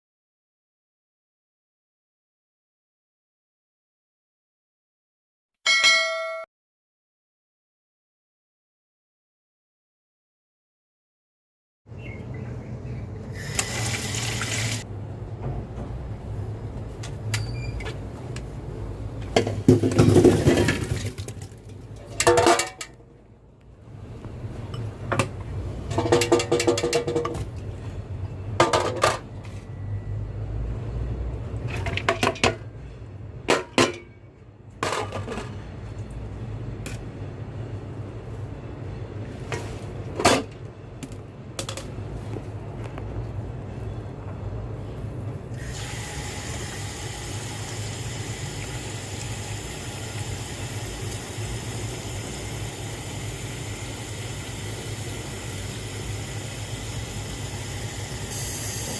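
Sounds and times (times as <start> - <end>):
liquid filling: 13.4 - 14.8.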